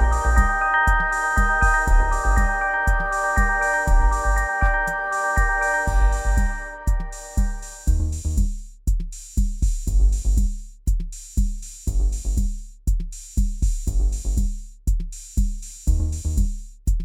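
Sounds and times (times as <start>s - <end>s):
bass notes: 0.0s - 4.8s, 5.4s - 8.4s, 9.9s - 10.4s, 11.9s - 12.4s, 13.9s - 14.4s, 15.9s - 16.4s
instrumental music with drum beat: 0.0s - 17.0s
kick drum: 0.0s - 17.0s.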